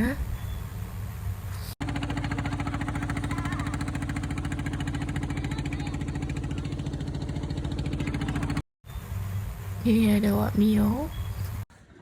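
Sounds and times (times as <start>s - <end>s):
small engine running: 1.8s - 8.6s.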